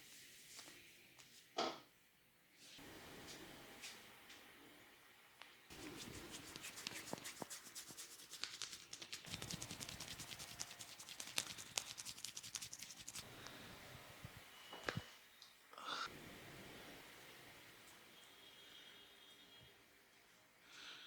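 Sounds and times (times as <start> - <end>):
hands scratching through hair: 5.7 - 13.3.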